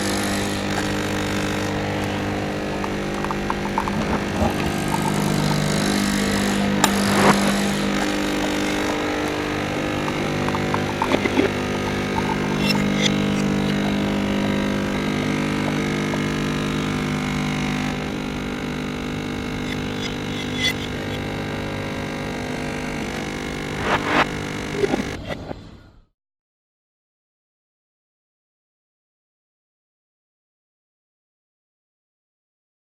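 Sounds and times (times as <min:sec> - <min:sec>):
sharp clicks and knocks: 0:00.0 - 0:25.3
steady motor hum: 0:00.0 - 0:25.9.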